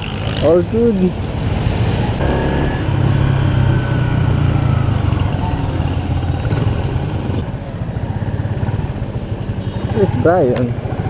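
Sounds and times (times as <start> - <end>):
motorcycle engine running: 2.2 - 9.5.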